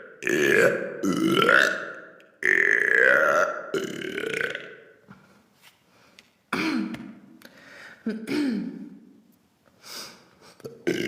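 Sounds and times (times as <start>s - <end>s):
burp: 0.0s - 5.0s
woman making throaty sounds: 8.0s - 9.0s, 10.5s - 11.0s.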